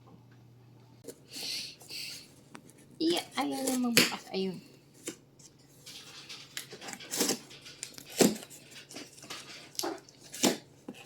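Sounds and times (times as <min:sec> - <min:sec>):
cardboard rustling and scraping: 0:05.0 - 0:11.0.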